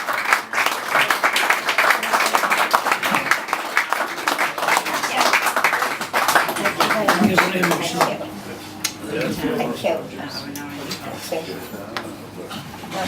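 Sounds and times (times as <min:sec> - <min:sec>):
audience applauding: 0:00.0 - 0:09.4.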